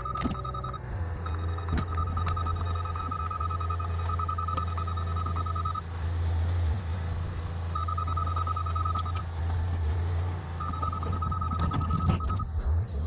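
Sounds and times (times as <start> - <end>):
rapid electronic warning beeper: 0.0 - 5.8, 7.8 - 9.2, 10.6 - 12.5
diesel engine running: 0.0 - 13.0.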